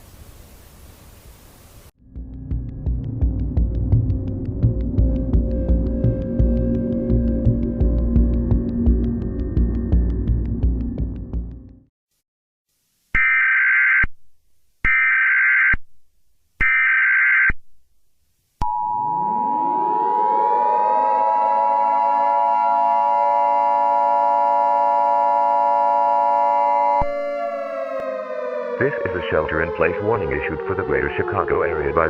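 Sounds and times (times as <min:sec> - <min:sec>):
civil defense siren wailing: 0:04.4 - 0:09.8, 0:19.0 - 0:32.0
two-tone attention signal: 0:18.6 - 0:28.0.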